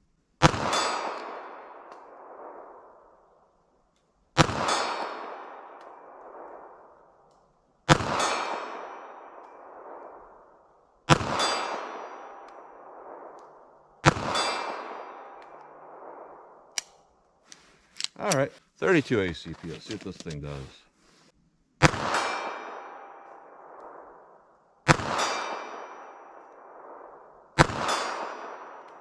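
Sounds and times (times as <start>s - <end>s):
pistol shots echoing: 0.4s - 2.8s, 4.4s - 6.8s, 7.9s - 10.4s, 11.1s - 13.4s, 14.0s - 16.5s, 21.8s - 24.1s, 24.9s - 26.8s, 27.6s - 29.0s.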